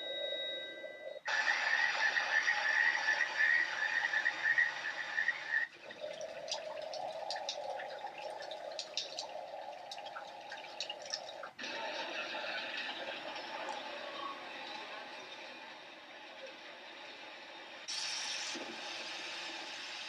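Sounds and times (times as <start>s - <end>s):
water drips: 1.2s - 15.6s
chorus of frogs: 1.3s - 15.2s
running water: 1.3s - 20.0s.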